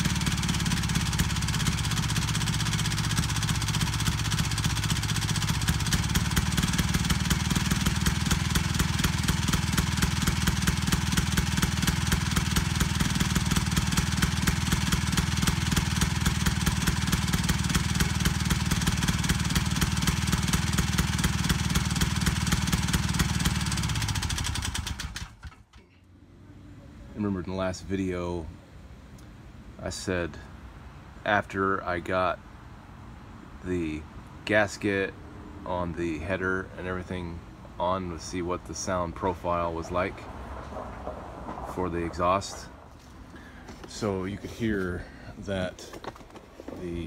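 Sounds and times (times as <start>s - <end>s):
golf cart engine running: 0.0s - 25.6s.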